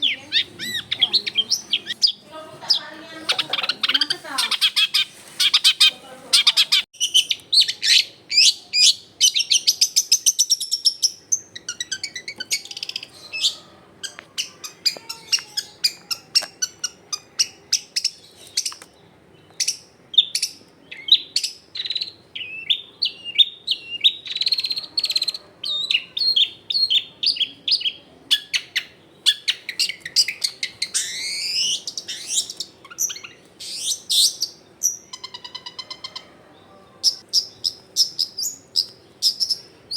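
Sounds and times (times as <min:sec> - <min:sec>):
bird singing chirps and whistles: 0:19.6 - 0:24.8, 0:25.7 - 0:35.8.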